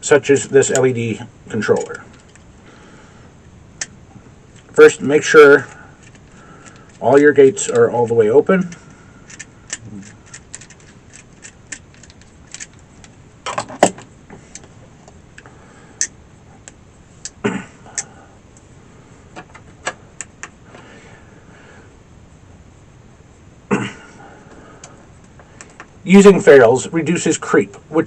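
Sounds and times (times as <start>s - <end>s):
small parts clattering: 1.6s - 2.5s, 5.4s - 7.9s, 8.6s - 15.5s.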